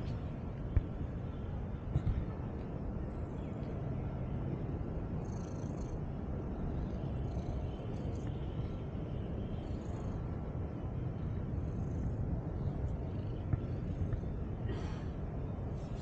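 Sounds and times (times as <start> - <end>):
cat purring: 5.2 - 10.4.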